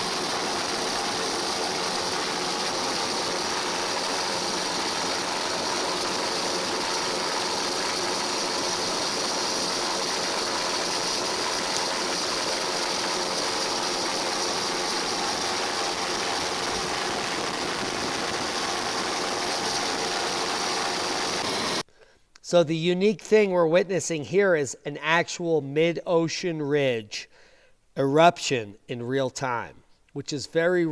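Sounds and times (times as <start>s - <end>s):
engine-like drone: 0.0s - 21.8s.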